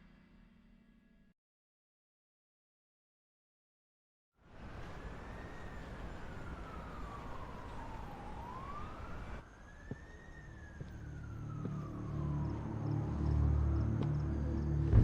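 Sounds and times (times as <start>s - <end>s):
emergency vehicle siren wailing: 4.7s - 15.0s.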